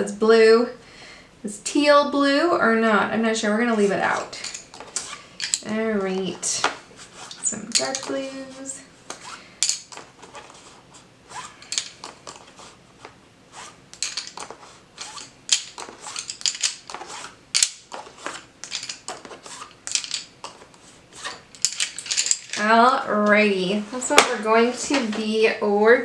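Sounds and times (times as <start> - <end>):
wooden pencils clicking: 4.1 - 6.3, 7.3 - 8.5, 9.1 - 10.6, 11.6 - 12.5, 13.9 - 22.7.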